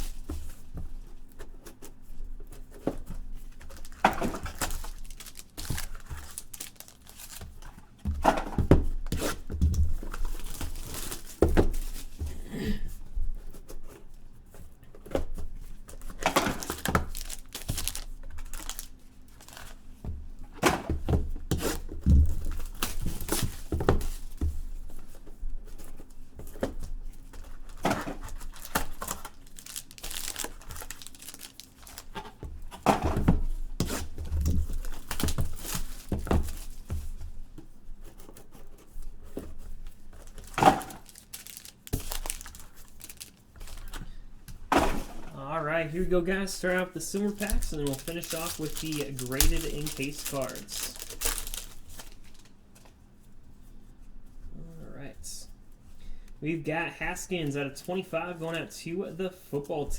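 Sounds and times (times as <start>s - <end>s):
packaging tearing and crinkling: 2.8s - 7.9s, 9.3s - 12.1s, 15.9s - 19.8s, 21.6s - 24.2s, 27.4s - 32.4s, 33.8s - 36.9s, 40.2s - 44.0s, 46.5s - 52.5s.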